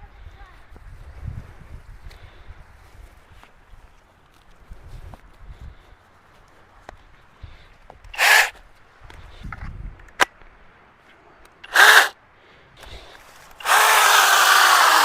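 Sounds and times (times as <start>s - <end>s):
electric chainsaw motor running: 8.2s - 8.5s, 11.7s - 12.1s, 13.6s - 15.0s.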